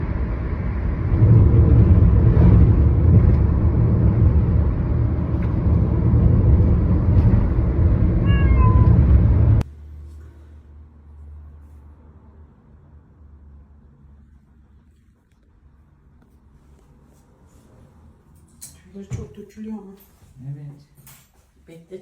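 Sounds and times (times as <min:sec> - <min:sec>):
loud low rumble: 0:00.0 - 0:09.7.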